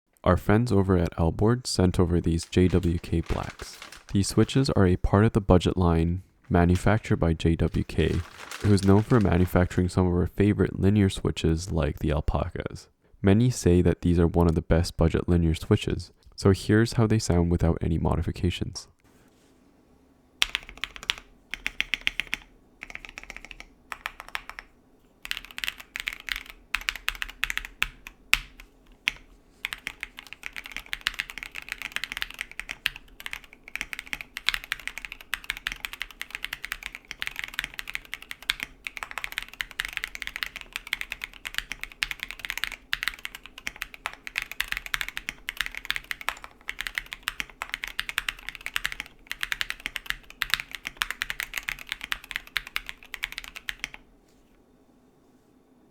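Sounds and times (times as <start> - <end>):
mechanical keyboard typing: 2.4 - 4.5, 7.7 - 9.8, 20.4 - 54.0.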